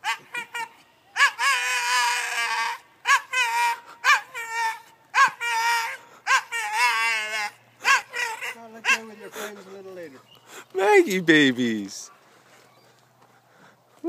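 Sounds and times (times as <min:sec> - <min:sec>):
dog screaming and wailing: 0:00.0 - 0:10.2.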